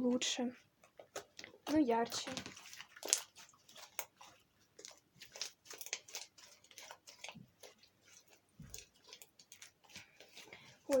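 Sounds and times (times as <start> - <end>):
slime being kneaded: 0.6 - 11.0.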